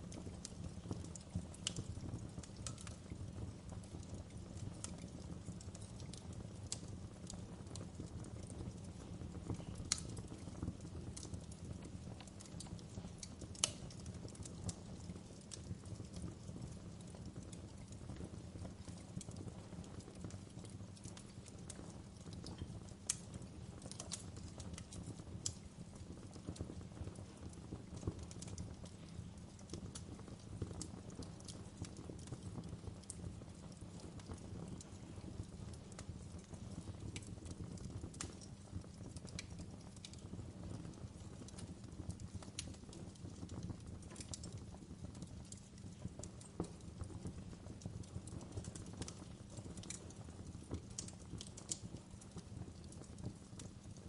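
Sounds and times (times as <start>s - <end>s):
fireplace crackling: 0.0s - 54.0s.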